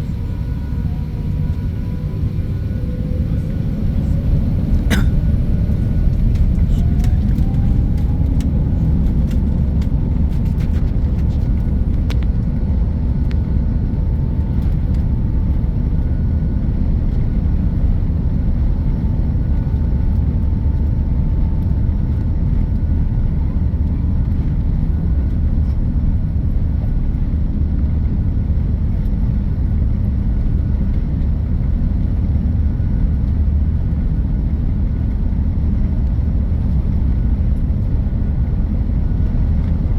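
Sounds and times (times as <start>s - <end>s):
faint whine: 0.0s - 22.4s
jet engine rumble and airflow: 0.0s - 39.9s.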